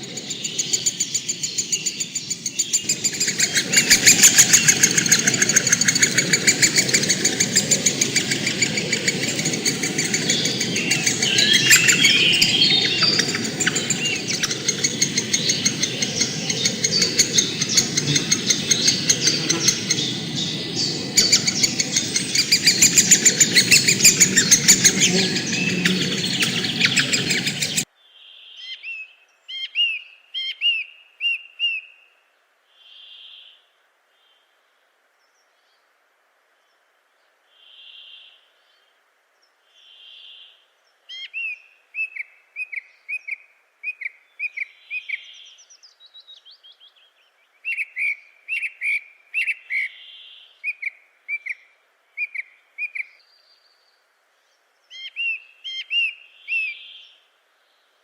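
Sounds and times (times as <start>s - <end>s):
low rushing background: 0.0s - 27.8s
birds chirping: 0.0s - 27.9s.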